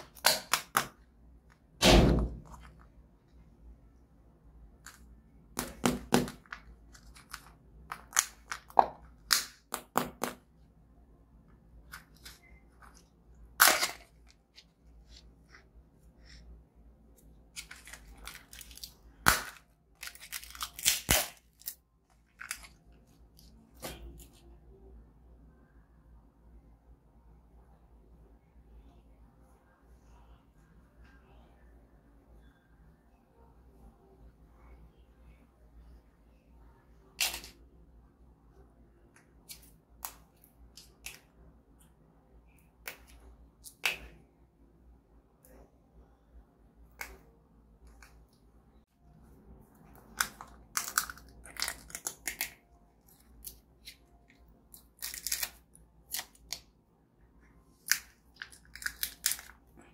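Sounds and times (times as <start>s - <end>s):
packaging sharp cracks: 17.6s - 22.8s, 54.8s - 56.6s
snack packaging crinkling: 17.6s - 23.5s, 50.1s - 53.9s, 54.8s - 56.6s, 57.8s - 59.6s.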